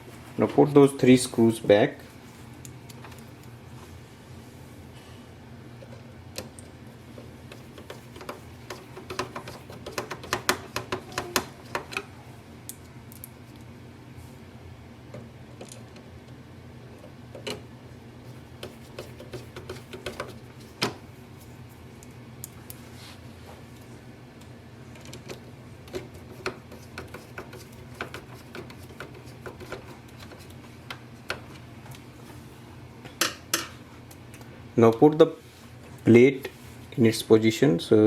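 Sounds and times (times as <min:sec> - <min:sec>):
low steady hum: 0:00.0 - 0:38.0.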